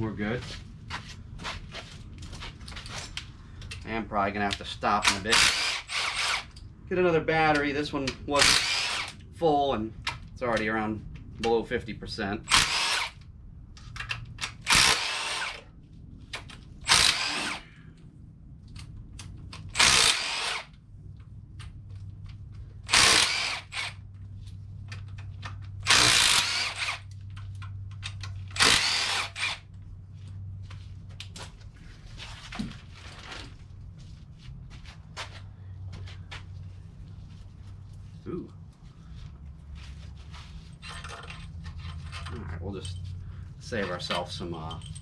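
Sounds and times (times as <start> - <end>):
impact wrench spinning bolts: 16.8 - 17.6, 19.7 - 20.7, 22.9 - 24.0, 25.8 - 27.1, 28.1 - 29.7.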